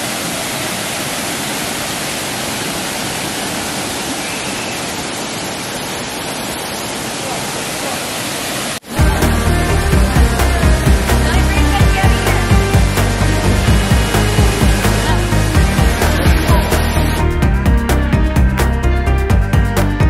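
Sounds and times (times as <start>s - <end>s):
waterfall rushing: 0.0s - 19.2s
music with heavy bass beat: 8.9s - 20.0s.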